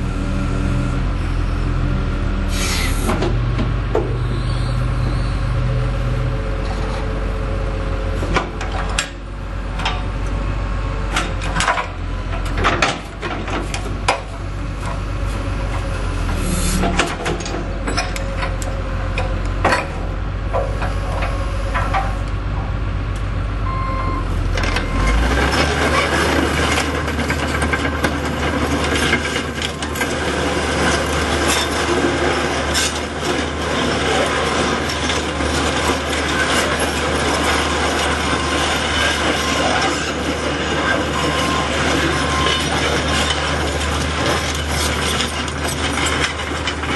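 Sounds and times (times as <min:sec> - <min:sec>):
excavator diesel engine hum: 0:00.0 - 0:46.9
clanks and knocks: 0:16.8 - 0:22.2
rough metallic clatter: 0:24.5 - 0:46.9.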